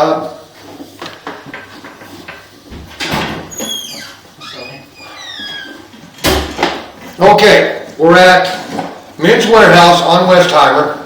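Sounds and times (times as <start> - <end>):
high falling squeaks: 3.5 - 5.9.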